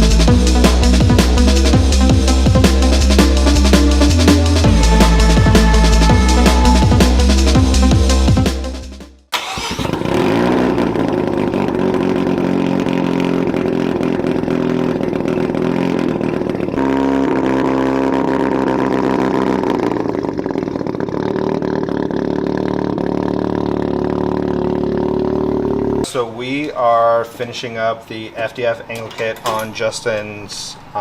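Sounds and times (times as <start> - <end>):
car engine revving: 0.0 - 26.1.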